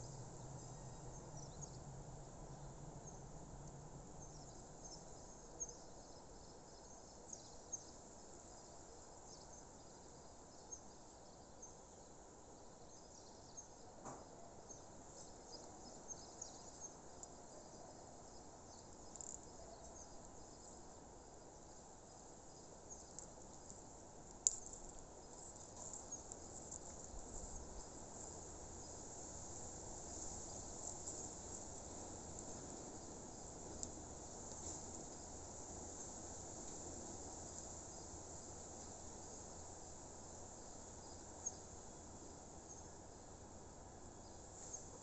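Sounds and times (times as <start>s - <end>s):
low outdoor hiss: 0.0s - 45.0s
crickets chirping: 14.7s - 45.0s.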